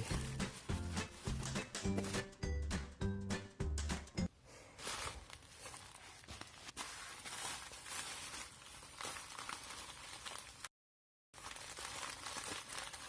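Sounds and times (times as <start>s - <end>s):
packaging rustling and scraping: 0.0s - 2.3s, 4.7s - 10.7s, 11.4s - 13.0s.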